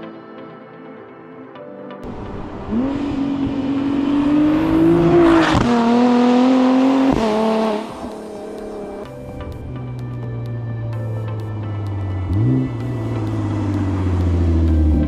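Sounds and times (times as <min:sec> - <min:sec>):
car engine accelerating hard: 0:02.0 - 0:09.1, 0:11.4 - 0:15.0.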